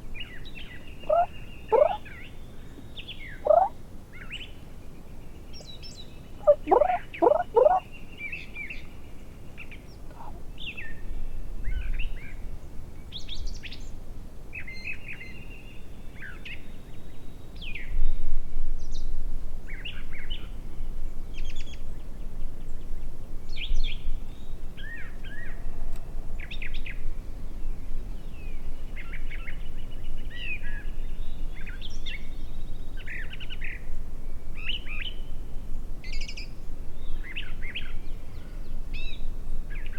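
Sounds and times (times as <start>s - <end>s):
songbirds chirping and trilling: 0.2s - 12.4s
louder lower bird calls: 1.0s - 2.1s, 3.3s - 3.8s, 6.4s - 7.9s.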